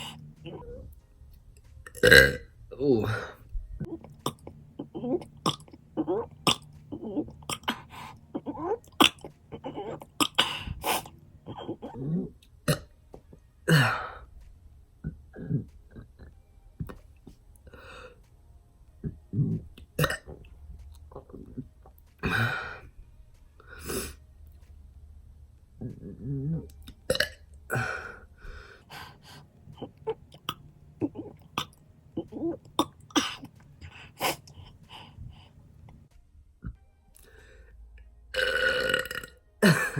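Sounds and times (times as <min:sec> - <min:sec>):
man burping: 0:01.9 - 0:12.9, 0:13.7 - 0:14.2, 0:19.0 - 0:20.5, 0:25.8 - 0:28.2, 0:38.4 - 0:39.9
throat-clearing and coughing: 0:03.0 - 0:12.9, 0:29.8 - 0:33.5, 0:39.6 - 0:39.9.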